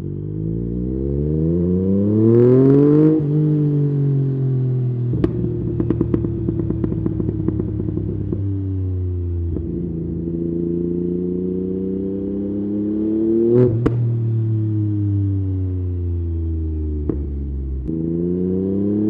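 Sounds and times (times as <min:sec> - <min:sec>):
motorcycle engine idling and revving: 0:00.0 - 0:19.0
exhaust pops and crackles: 0:05.1 - 0:08.4, 0:13.8 - 0:14.1, 0:17.0 - 0:17.4.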